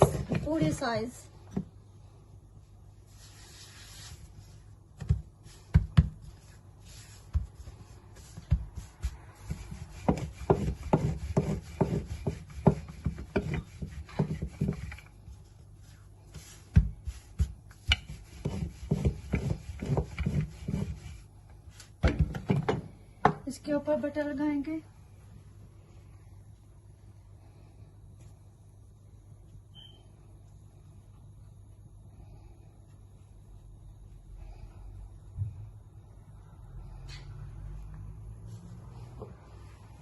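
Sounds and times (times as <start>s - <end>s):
rolling pin rolling dough: 0.0s - 1.0s, 3.1s - 23.4s.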